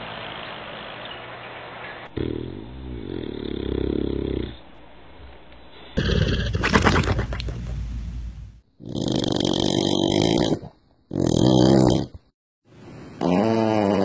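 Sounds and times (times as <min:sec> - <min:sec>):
dog snoring: 0:02.1 - 0:04.8, 0:08.8 - 0:12.2, 0:13.2 - 0:14.0.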